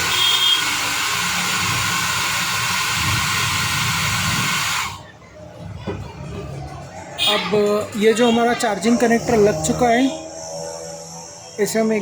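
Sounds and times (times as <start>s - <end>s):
air blower hissing: 0.0s - 5.1s.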